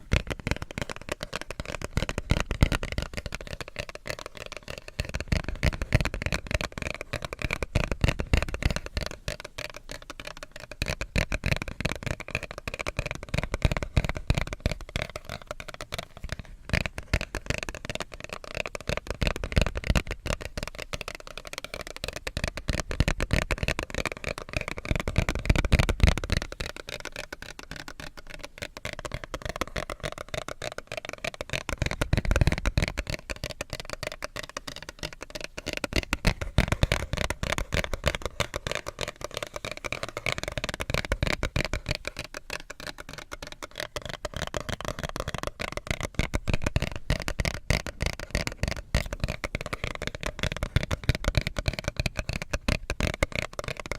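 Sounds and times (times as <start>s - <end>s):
crackly scratching on paper card: 0.0s - 53.9s
tapping on paper card: 0.0s - 53.9s.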